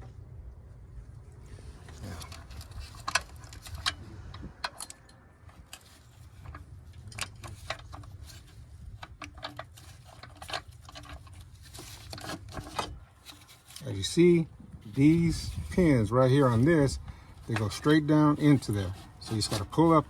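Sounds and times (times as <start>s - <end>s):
low steady rumble: 0.0s - 20.0s
tools and plastic parts clicking: 1.9s - 13.9s, 16.5s - 20.0s.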